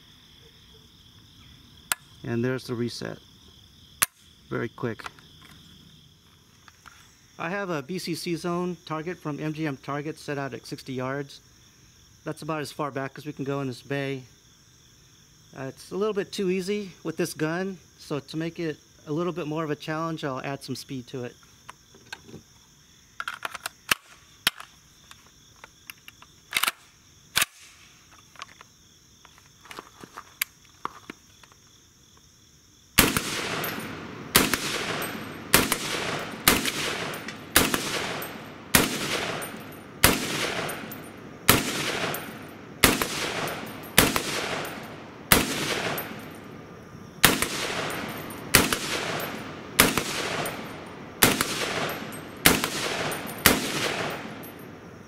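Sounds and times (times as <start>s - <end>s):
insect chirring: 0.0s - 55.0s
rifle shots with echo: 33.0s - 46.5s, 47.2s - 54.8s.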